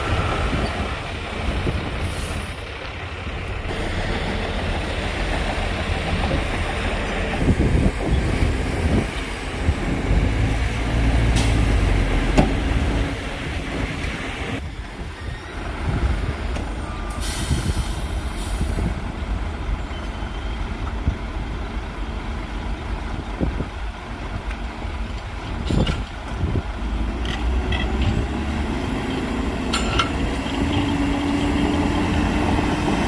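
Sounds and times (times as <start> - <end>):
diesel truck engine running: 0.0 - 14.6.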